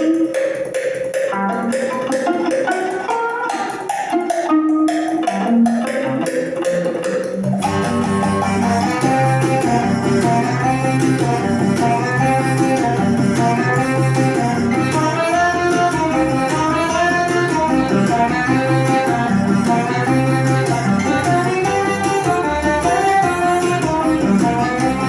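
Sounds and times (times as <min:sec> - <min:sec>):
plucked guitar music: 0:00.0 - 0:25.0.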